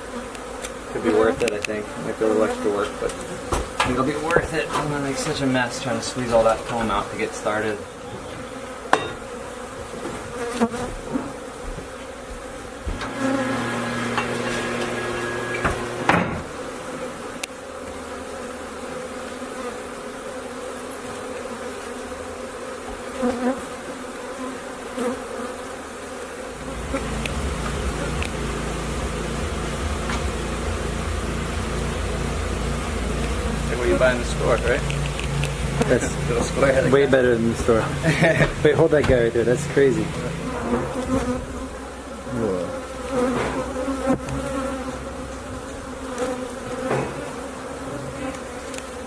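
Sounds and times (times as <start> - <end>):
bees buzzing: 0.0 - 49.0
sharp knocks: 14.0 - 16.5
low steady rumble: 26.6 - 40.6.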